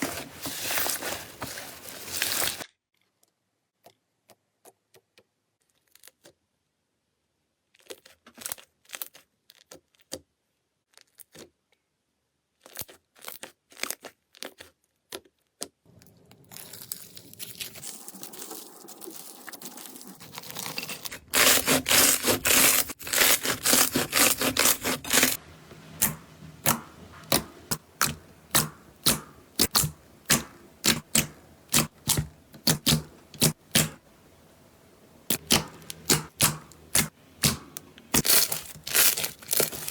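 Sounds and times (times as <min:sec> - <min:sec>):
slime crackling: 0:16.5 - 0:39.9
slime clicking and popping: 0:26.0 - 0:34.0.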